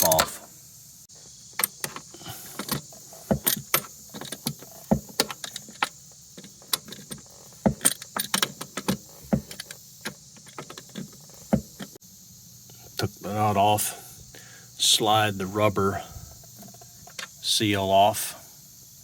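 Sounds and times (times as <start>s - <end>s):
metal tools clinking: 0.0s - 0.4s, 1.6s - 12.0s.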